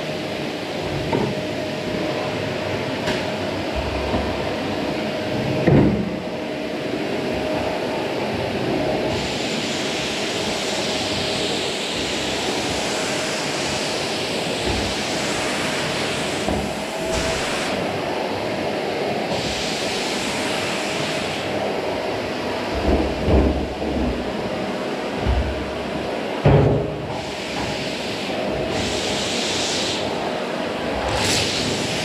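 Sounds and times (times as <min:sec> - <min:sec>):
vacuum cleaner running: 0:00.0 - 0:32.0.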